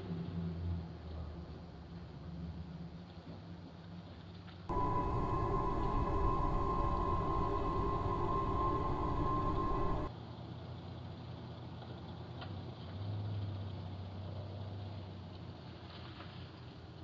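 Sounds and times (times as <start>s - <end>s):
music: 4.7s - 10.1s
vehicle engine hum: 4.7s - 10.1s.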